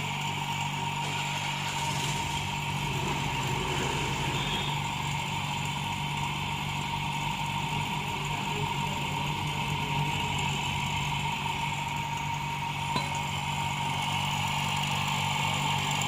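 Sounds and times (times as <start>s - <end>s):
small motor humming: 0.0s - 16.0s.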